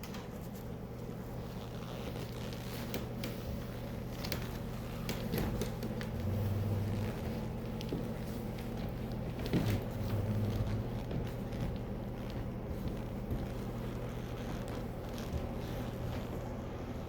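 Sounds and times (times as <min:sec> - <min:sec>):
machine humming: 0:04.8 - 0:17.0.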